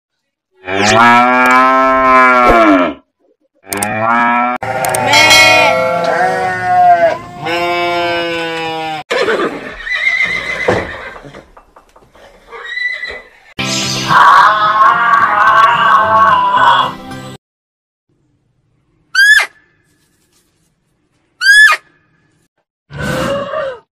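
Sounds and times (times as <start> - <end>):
cow mooing: 0.6 - 3.0, 3.7 - 9.0.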